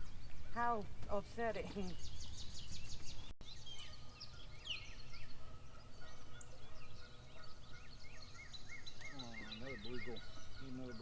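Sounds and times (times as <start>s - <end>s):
birds chirping and trilling: 0.0s - 11.0s.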